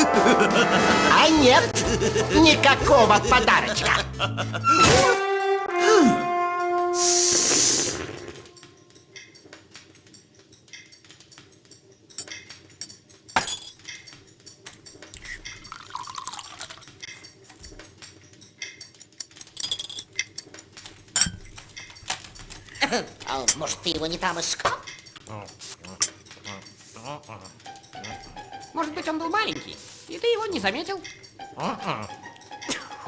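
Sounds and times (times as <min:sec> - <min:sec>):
dishes and cutlery clinking: 0:08.4 - 0:33.0.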